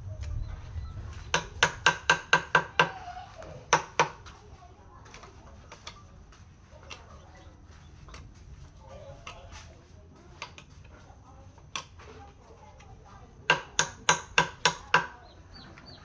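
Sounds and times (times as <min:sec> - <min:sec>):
faint birds chirping: 0:00.0 - 0:01.5, 0:04.6 - 0:10.0, 0:14.9 - 0:16.0.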